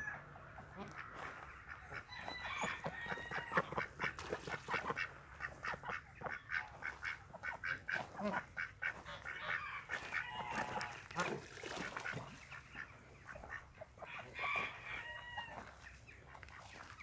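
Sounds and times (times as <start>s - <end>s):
farmyard fowl calling: 0.0s - 17.0s.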